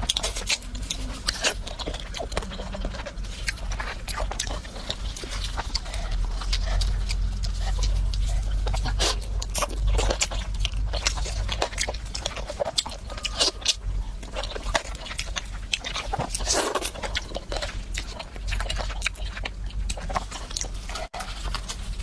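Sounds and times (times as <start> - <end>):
person chewing food: 0.0 - 22.0
steady low hum: 0.0 - 22.0.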